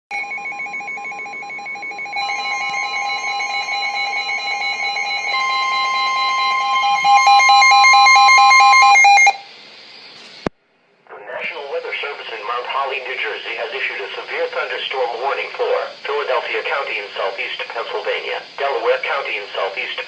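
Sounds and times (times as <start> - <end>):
fast alternating beeping: 0.1 - 9.4
weather radio alarm tones: 0.1 - 9.5, 11.1 - 20.0.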